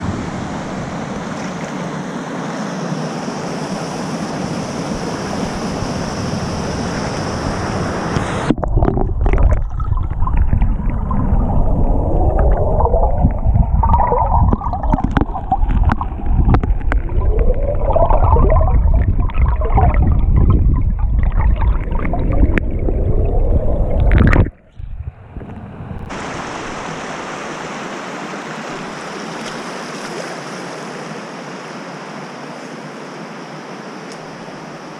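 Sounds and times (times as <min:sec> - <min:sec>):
mountain stream rushing: 0:00.0 - 0:08.5, 0:26.0 - 0:34.9
underwater bubbling gurgles: 0:07.9 - 0:26.4.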